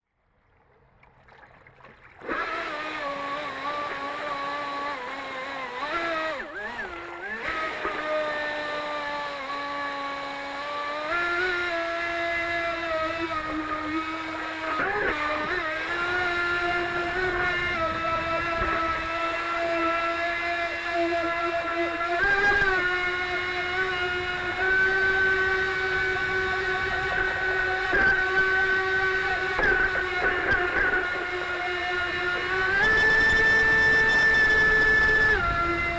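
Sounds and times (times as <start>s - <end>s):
faint water noise: 0.1s - 4.1s
model boat motor whining: 2.2s - 35.9s.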